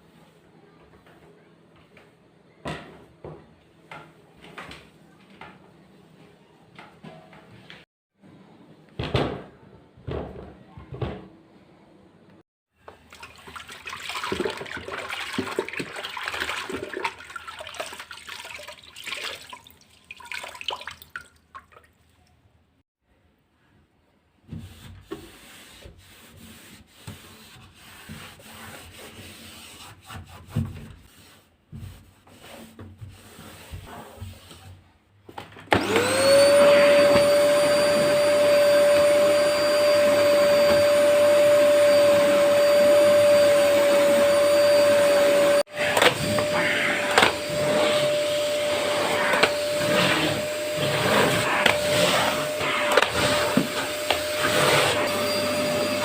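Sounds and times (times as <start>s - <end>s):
knocks and bumps of vacuum cleaner: 9.0s - 11.3s, 35.3s - 44.8s, 45.7s - 56.0s
vacuum cleaner motor whining: 35.7s - 56.0s.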